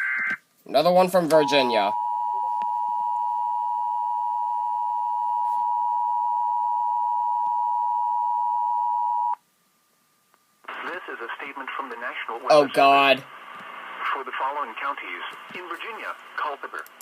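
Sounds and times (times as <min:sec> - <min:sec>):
harsh two-tone alert signal: 0:01.4 - 0:03.6.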